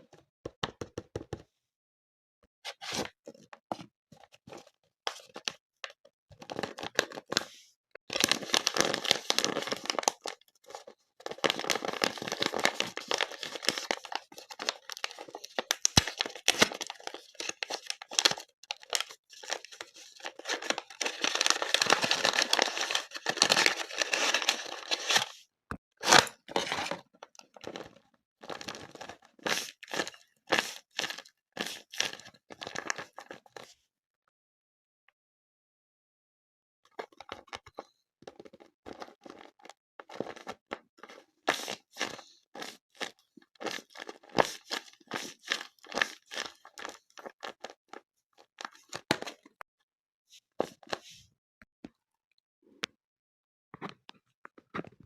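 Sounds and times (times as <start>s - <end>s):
plastic wrapper tearing and crinkling: 8.1s - 25.4s, 26.0s - 33.4s, 41.5s - 49.4s.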